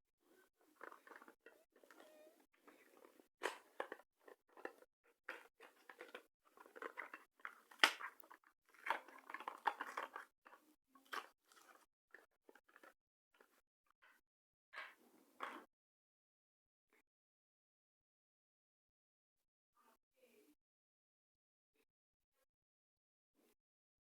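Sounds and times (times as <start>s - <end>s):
plastic and cardboard crinkling: 0.6s - 13.5s.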